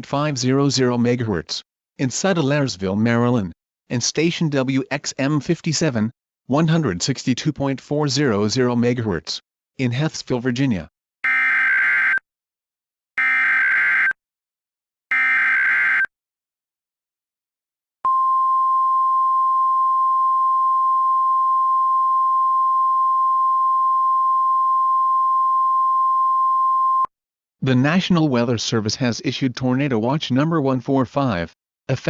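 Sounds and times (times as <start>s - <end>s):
single-pitch warning alarm tone: 11.2s - 12.2s, 13.2s - 14.2s, 15.1s - 16.1s, 18.1s - 27.1s.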